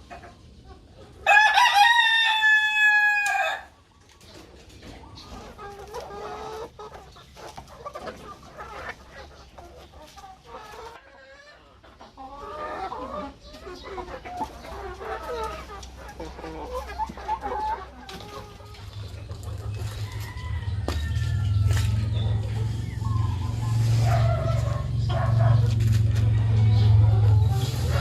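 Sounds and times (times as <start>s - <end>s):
hens clucking: 0.0s - 28.0s
rooster crowing: 1.2s - 3.7s, 19.8s - 25.6s.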